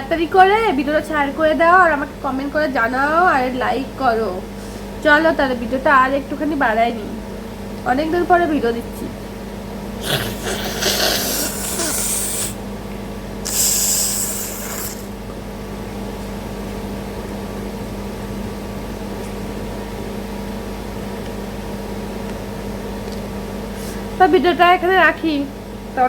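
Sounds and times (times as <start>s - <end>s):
steady background hum: 0.0s - 26.0s
woman blowing her nose: 10.0s - 12.6s, 13.4s - 15.2s.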